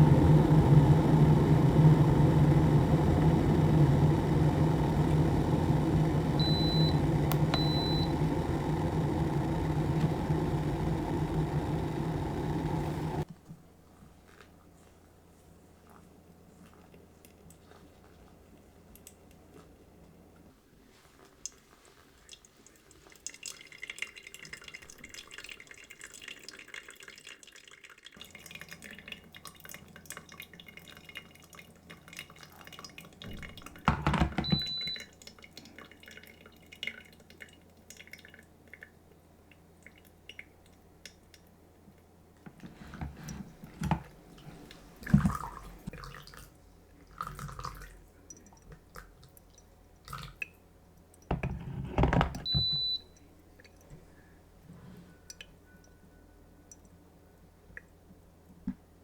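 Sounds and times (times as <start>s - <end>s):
water dripping through coffee filter: 22.2s - 33.8s, 34.5s - 41.5s.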